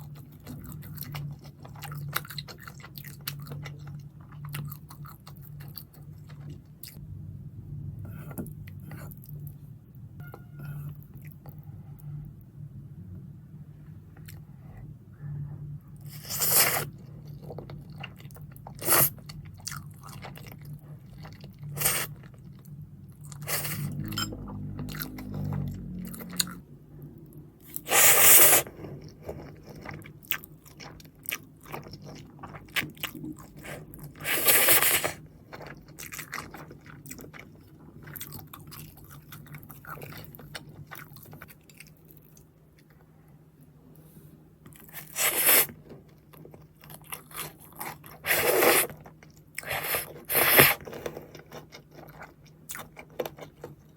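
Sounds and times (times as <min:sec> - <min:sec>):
steady low hum: 0:00.0 - 0:53.9
crunching fried chicken: 0:44.7 - 0:53.9.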